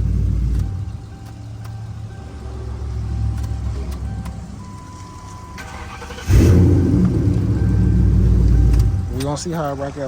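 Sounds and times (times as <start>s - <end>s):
car engine running: 0.0s - 10.0s
engine sharp rev: 5.6s - 8.9s.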